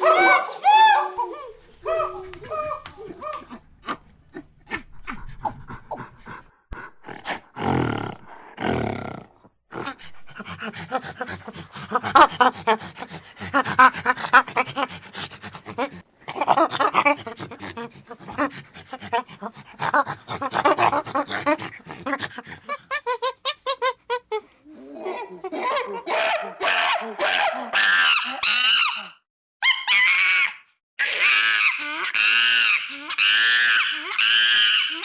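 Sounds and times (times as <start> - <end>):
monkeys screeching: 0.0 - 4.0, 27.7 - 35.0
monkeys chattering and grunting: 0.0 - 7.4, 9.7 - 24.0.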